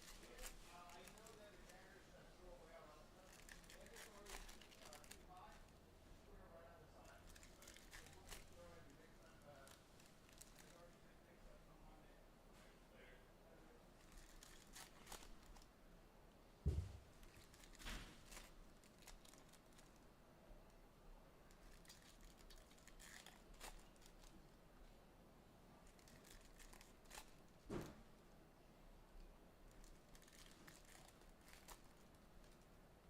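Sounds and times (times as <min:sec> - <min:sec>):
wrapper crinkling: 0:00.0 - 0:05.7, 0:07.0 - 0:11.0, 0:14.0 - 0:15.7, 0:17.1 - 0:20.0, 0:21.5 - 0:24.4, 0:25.8 - 0:27.8, 0:29.7 - 0:32.7
dull thump: 0:16.6 - 0:17.0.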